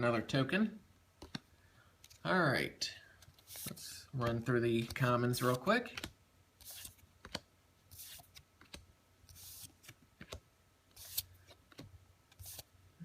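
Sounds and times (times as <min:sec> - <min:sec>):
cards sliding over cards: 0:03.2 - 0:12.7.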